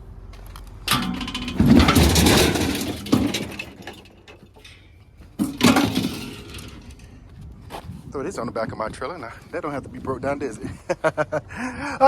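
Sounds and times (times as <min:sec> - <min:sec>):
scrap metal clattering and scraping: 0:00.8 - 0:07.3
sharp metal knocks: 0:00.9 - 0:07.1.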